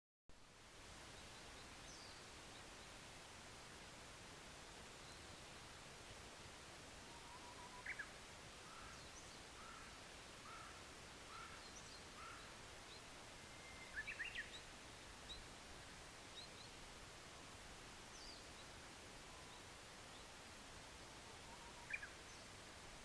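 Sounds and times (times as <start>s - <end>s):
short evenly spaced bird notes: 7.0s - 23.0s
bush warbler singing: 7.1s - 10.7s, 11.3s - 15.5s, 18.1s - 20.4s, 21.4s - 22.5s
high chirps of small birds: 11.4s - 14.7s.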